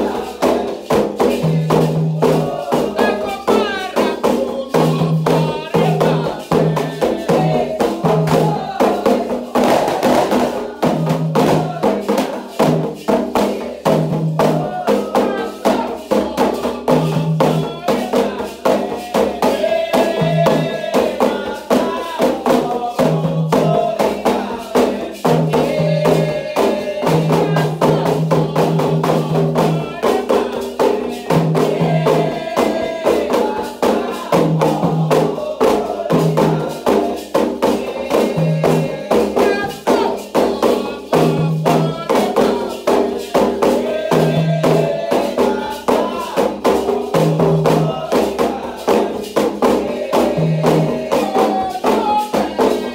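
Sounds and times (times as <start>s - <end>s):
hand drums playing fast rhythm: 0.0s - 52.9s
people singing chants: 0.0s - 52.9s.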